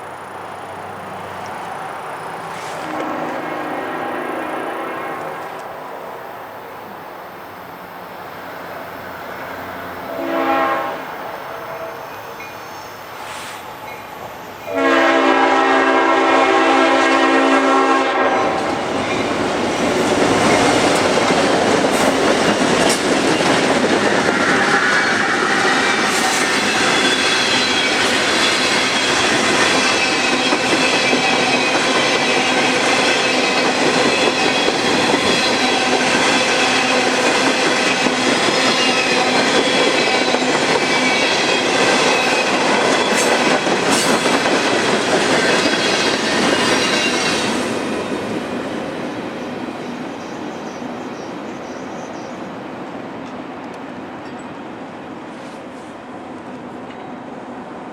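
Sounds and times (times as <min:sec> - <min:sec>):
wheels clicking over rail joints: 0:00.0 - 0:03.4, 0:18.5 - 0:25.1
train rumble and clatter: 0:00.0 - 0:57.9
locomotive air horn blast: 0:02.6 - 0:05.6, 0:10.0 - 0:12.0, 0:14.7 - 0:18.7.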